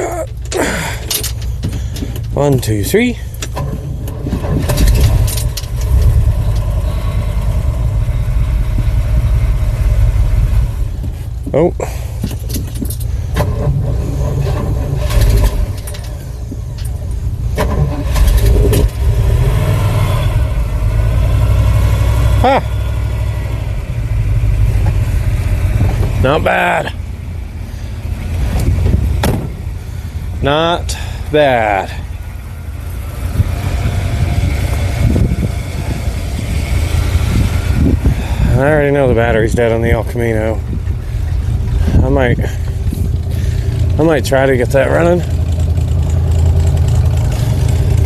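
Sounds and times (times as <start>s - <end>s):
car engine cold start: 0.0s - 11.0s, 11.8s - 26.8s.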